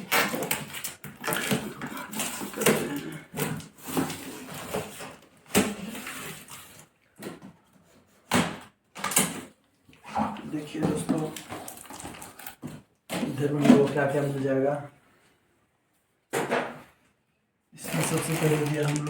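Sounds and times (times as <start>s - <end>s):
cardboard tearing: 0.0s - 6.8s, 11.1s - 12.6s, 17.8s - 19.0s.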